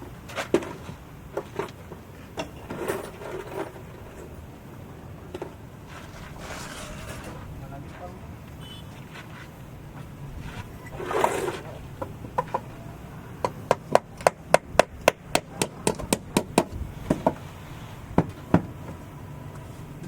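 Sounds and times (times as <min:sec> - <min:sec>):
short scraping noise: 0:05.9 - 0:07.7, 0:10.4 - 0:11.8
hammer strikes: 0:13.4 - 0:17.4.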